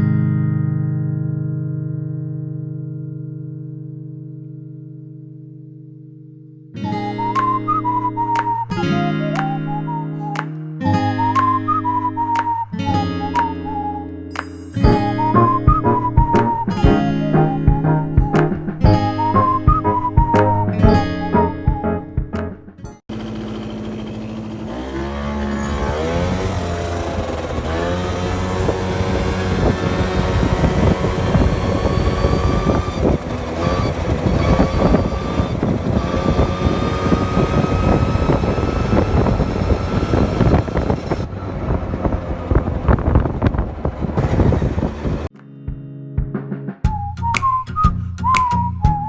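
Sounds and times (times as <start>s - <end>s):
background music with plucked guitar: 0.0s - 23.0s, 27.8s - 41.0s, 45.3s - 49.0s
scooter engine revving: 23.1s - 45.3s.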